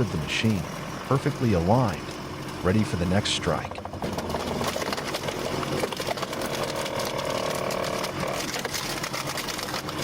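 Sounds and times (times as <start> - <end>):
firewood processor rattling: 3.5 - 10.0.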